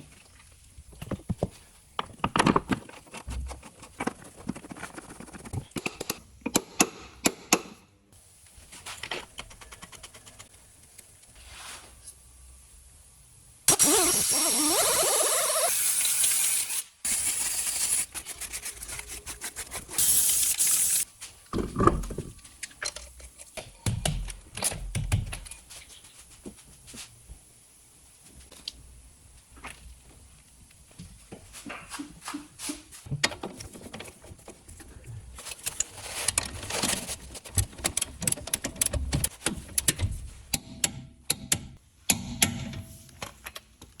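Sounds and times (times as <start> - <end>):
loud hiss bursts: 13.7 - 18.0.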